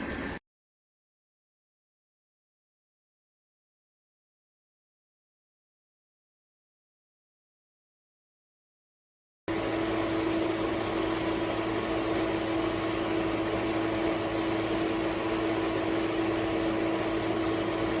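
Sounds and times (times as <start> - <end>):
pump motor hum: 9.5 - 18.0.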